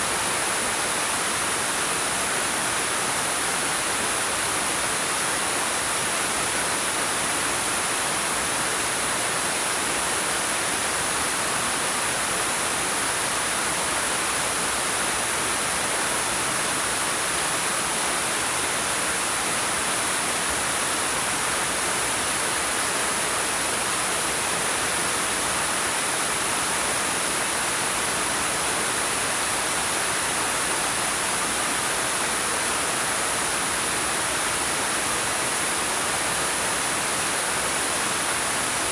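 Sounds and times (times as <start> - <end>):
waterfall rushing over rocks: 0.0 - 38.9.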